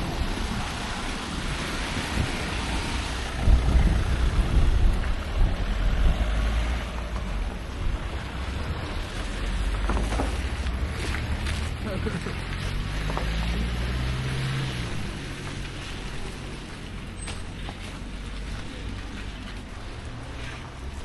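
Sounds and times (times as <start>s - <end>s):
steady rushing noise: 0.0s - 10.8s
wind rumble on microphone: 0.0s - 11.8s.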